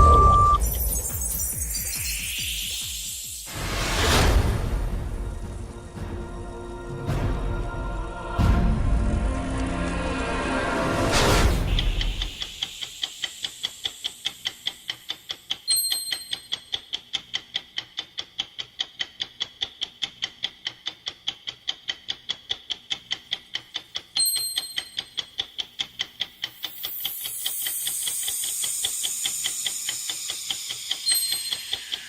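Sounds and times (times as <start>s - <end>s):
clock ticking rapidly: 11.7s - 32.0s.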